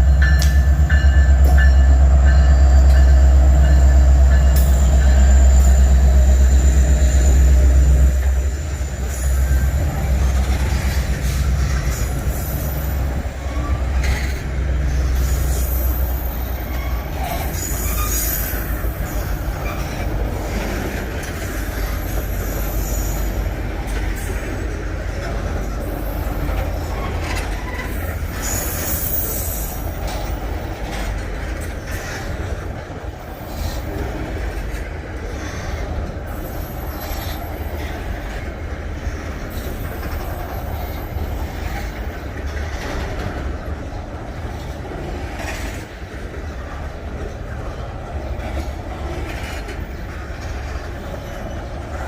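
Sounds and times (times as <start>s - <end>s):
train wheels rumbling on track: 0.0s - 52.0s
wheel squeals: 2.4s - 23.4s.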